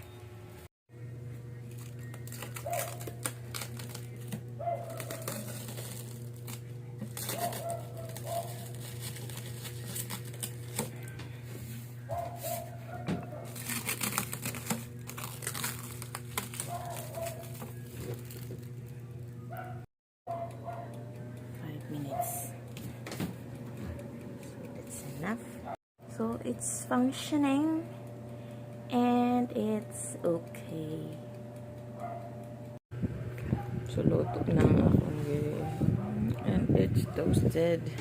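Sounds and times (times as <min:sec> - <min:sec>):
air fryer humming: 0:00.0 - 0:38.0
crinkling and clicking: 0:01.6 - 0:11.3, 0:12.1 - 0:24.9.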